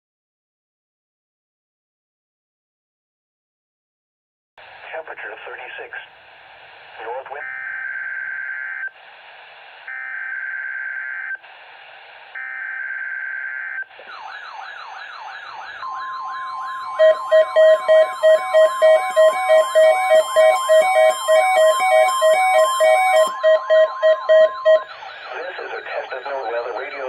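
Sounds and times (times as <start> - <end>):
wavering siren-like alert: 12.4 - 27.0
steady single alarm tone: 15.8 - 25.3
rapid even beeps: 15.8 - 27.0
buzzy data tones: 16.5 - 26.9.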